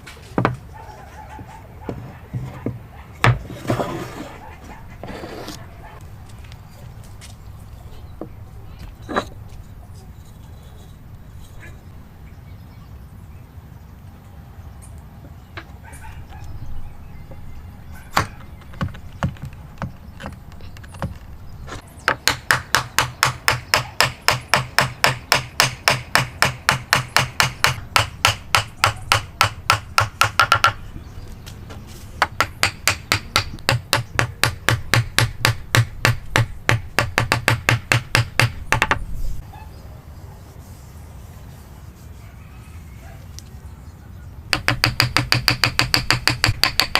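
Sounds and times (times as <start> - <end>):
hammer strikes on wood: 22.1 - 30.8, 32.2 - 39.0, 44.5 - 46.9.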